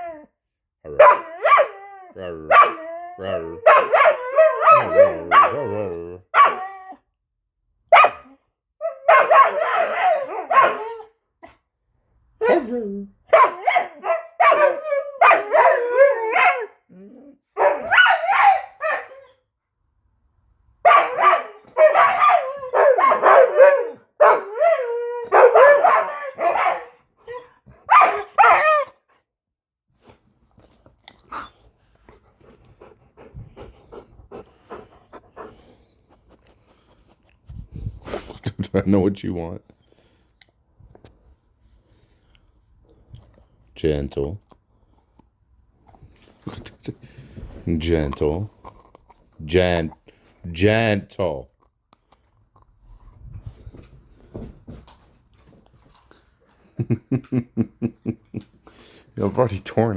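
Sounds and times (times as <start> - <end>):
dog barking: 0.9 - 1.8, 2.5 - 2.8, 3.6 - 5.7, 6.3 - 6.7, 7.9 - 11.0, 13.3 - 16.8, 17.5 - 19.2, 20.8 - 27.0, 27.9 - 28.9.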